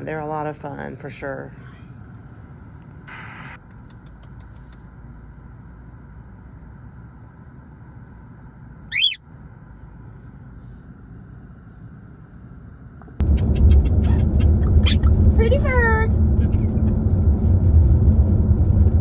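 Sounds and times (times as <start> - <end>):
road noise inside moving car: 0.0 - 19.0
pet bird squawk: 8.9 - 9.2, 13.4 - 15.1.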